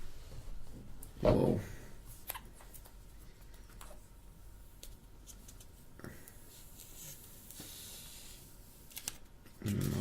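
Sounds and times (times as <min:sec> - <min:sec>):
soft rubbing hiss: 0:04.0 - 0:09.2.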